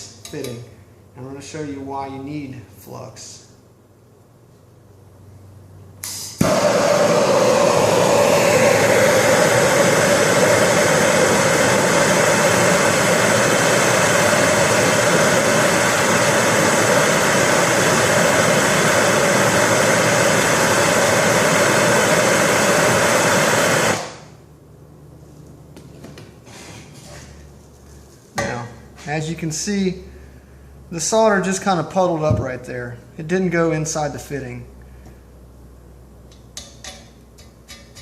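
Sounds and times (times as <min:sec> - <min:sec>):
gas torch flame burning: 0:06.0 - 0:24.4.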